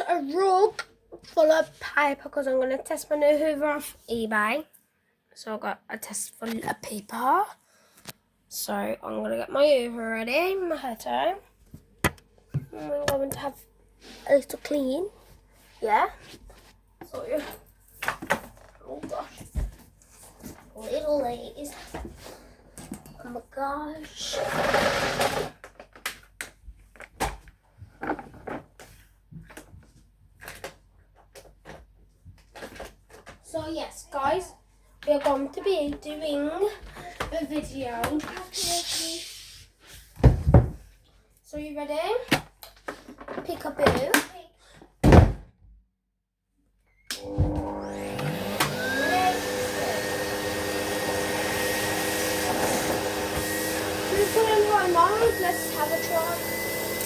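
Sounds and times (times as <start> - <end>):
objects knocking and rustling: 40.1 - 40.9
vacuum cleaner motor whine: 47.1 - 57.0.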